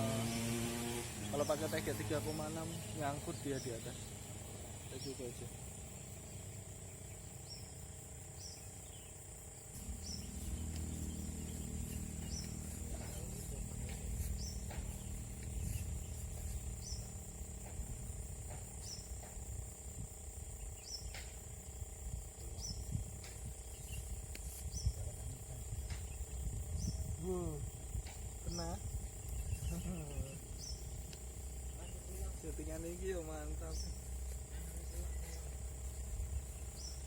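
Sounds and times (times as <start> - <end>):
high insect drone: 0.0 - 37.0
low rumble: 9.8 - 18.6.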